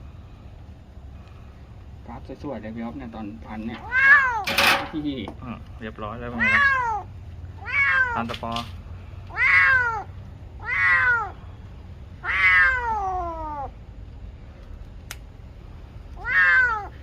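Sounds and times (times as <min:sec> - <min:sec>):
cat meowing in pain: 0:03.7 - 0:04.8, 0:06.3 - 0:08.4, 0:09.3 - 0:11.4, 0:12.2 - 0:13.7, 0:16.2 - 0:17.0.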